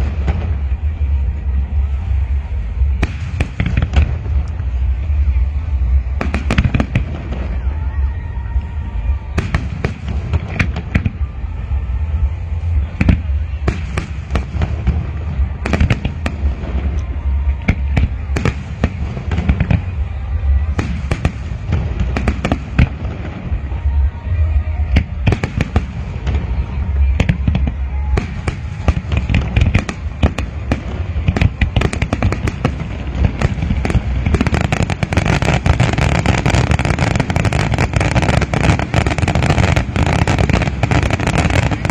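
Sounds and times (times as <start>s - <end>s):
fireworks crackling: 0.0s - 41.9s
heavy low rumble: 0.0s - 41.9s
firework bangs and pops: 24.9s - 41.9s.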